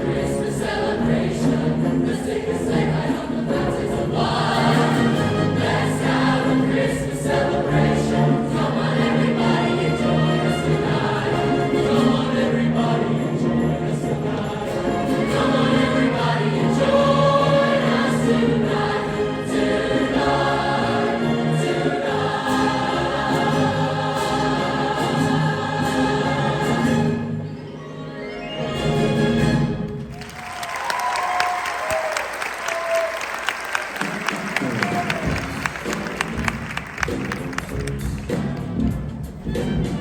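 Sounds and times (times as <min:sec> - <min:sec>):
choir singing: 0:00.0 - 0:29.9.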